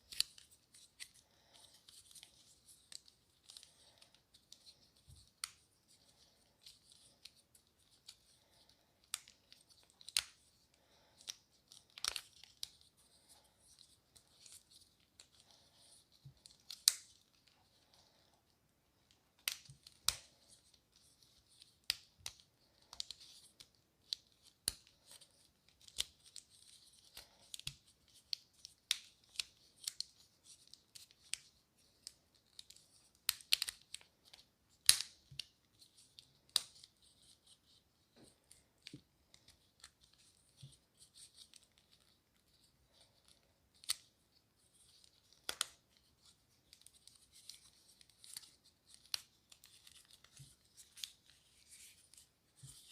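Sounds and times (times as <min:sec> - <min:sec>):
soft crinkly rustle: 0:00.0 - 0:52.9.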